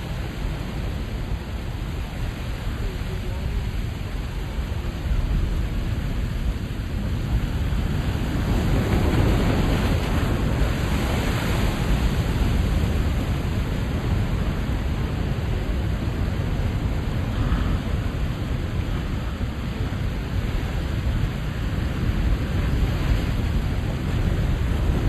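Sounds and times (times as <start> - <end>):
deep surf rumble: 0.0 - 25.0
waves breaking and washing in: 0.0 - 25.0.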